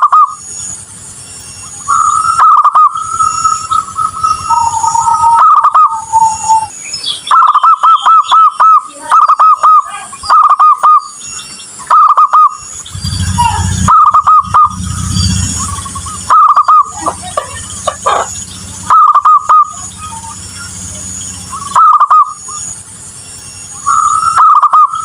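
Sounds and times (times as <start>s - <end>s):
dove cooing: 0.0s - 0.4s, 1.9s - 11.0s, 11.9s - 22.4s, 23.8s - 25.0s
low rumble: 12.6s - 21.8s.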